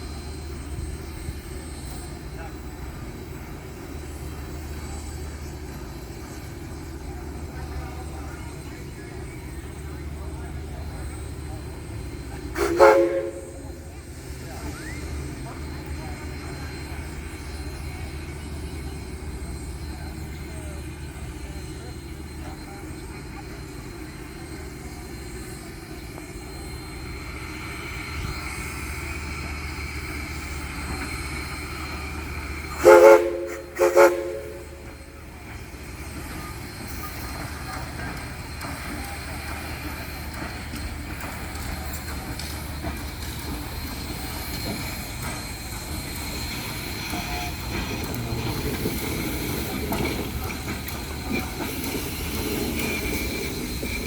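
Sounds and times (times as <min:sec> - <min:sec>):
steam locomotive whistle blasts: 0:12.3 - 0:14.0, 0:31.0 - 0:35.2.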